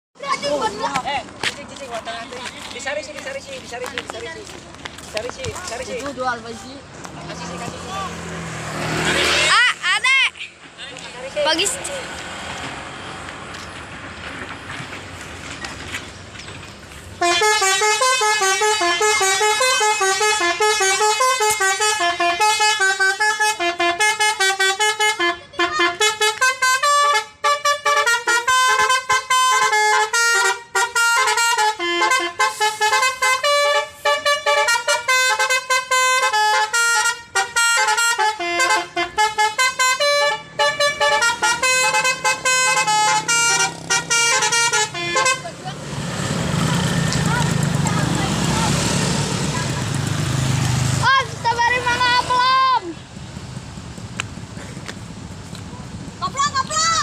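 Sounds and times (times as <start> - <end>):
low street noise: 0.2 - 57.0
bus musical horn: 17.2 - 45.8.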